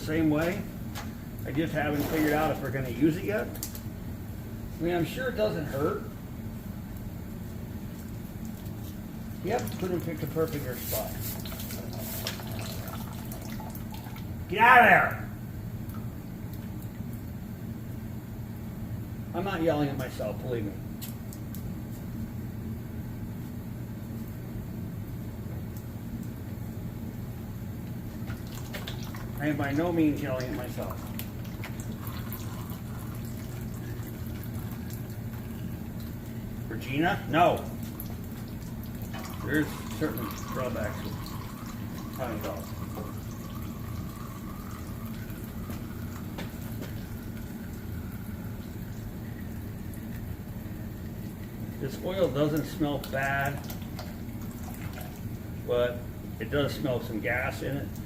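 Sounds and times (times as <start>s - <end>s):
low machine hum with hiss: 0.0s - 58.0s
oil trickling into drain pan: 9.4s - 14.3s, 28.0s - 55.5s.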